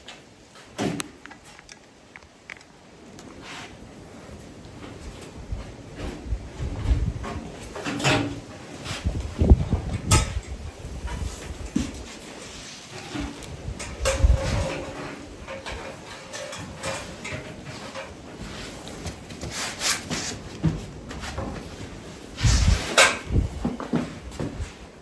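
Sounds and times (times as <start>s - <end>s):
tools knocking and rattling: 9.9s - 12.0s, 13.1s - 19.4s.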